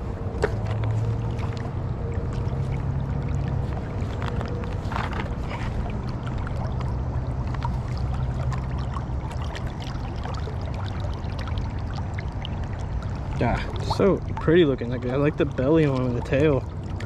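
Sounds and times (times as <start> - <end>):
small splashes and trickles: 0.0 - 17.0.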